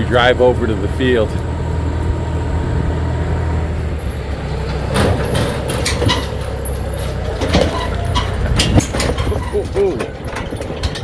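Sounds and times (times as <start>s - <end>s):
engine and road rumble: 0.0s - 11.0s
sharp rattles and knocks: 4.2s - 11.0s.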